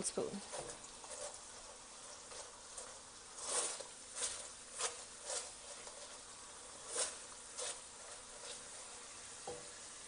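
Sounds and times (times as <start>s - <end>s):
sauce sizzling in a pan: 0.0s - 10.0s.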